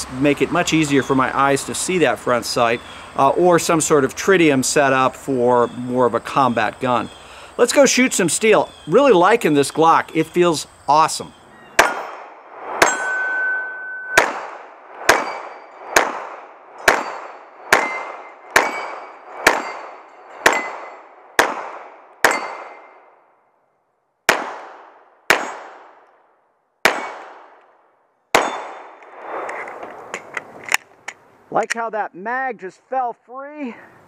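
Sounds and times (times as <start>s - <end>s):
pistol shots: 11.8s - 13.1s, 14.2s - 23.1s, 24.3s - 26.0s, 26.8s - 27.7s, 28.3s - 29.1s
steel target plate clanging: 12.8s - 14.4s, 15.1s - 16.1s, 16.8s - 21.1s, 22.2s - 23.0s.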